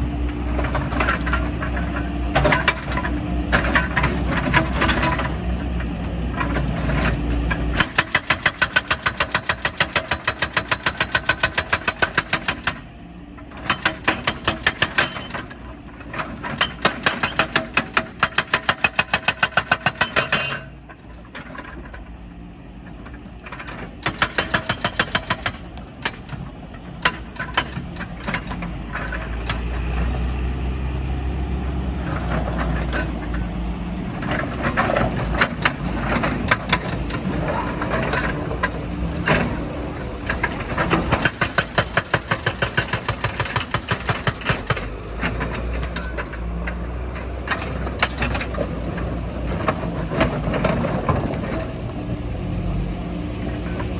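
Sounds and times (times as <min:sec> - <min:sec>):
heavy diesel machinery running: 0:00.0 - 0:53.9.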